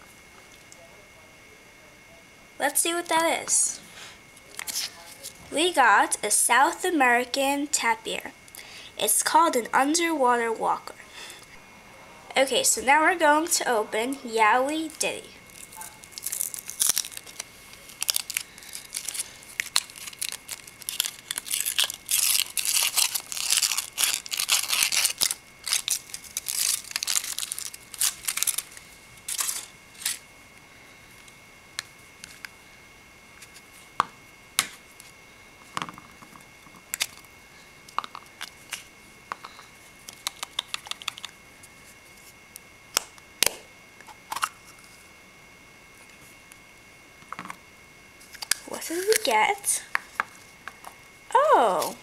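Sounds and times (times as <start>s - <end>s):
foil wrapper crinkling and tearing: 15.4s - 30.2s, 36.9s - 37.3s, 48.2s - 49.7s
packaging clicks and crinkles: 15.5s - 30.3s, 36.9s - 37.3s, 37.9s - 41.4s, 48.2s - 49.4s.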